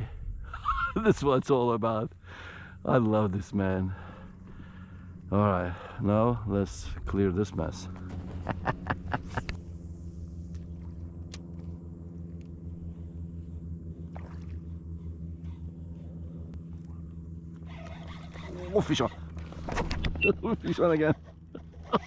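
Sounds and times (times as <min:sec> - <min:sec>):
electric motor humming: 0:02.1 - 0:22.0.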